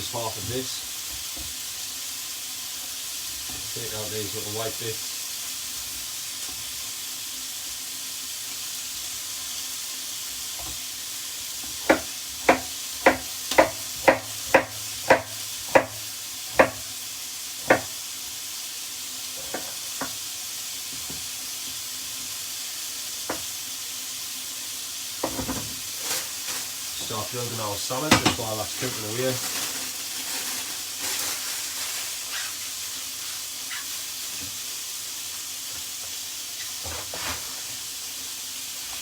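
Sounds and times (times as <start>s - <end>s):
meat sizzling in a frying pan: 0.0s - 39.0s
knife knocking on chopping board: 17.6s - 17.9s.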